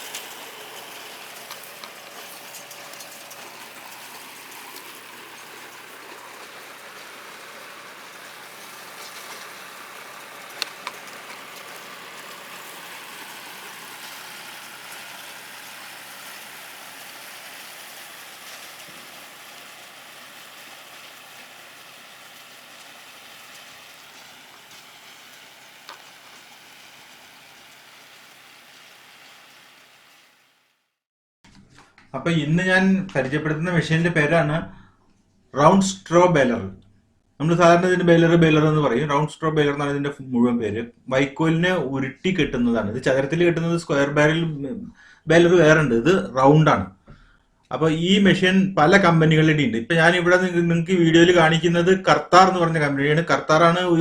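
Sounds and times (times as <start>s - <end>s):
broad hiss: 0.0s - 30.5s.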